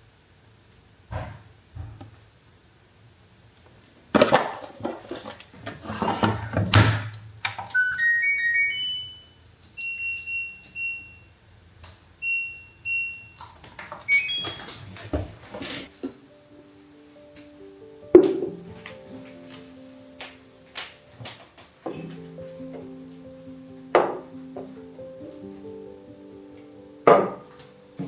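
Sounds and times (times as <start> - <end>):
handling and rustling noise: 3.7 - 6.8
high electronic beeps: 7.8 - 11.3, 12.2 - 13.5, 14.1 - 14.8
rising electronic chime: 7.8 - 11.3, 14.1 - 14.7.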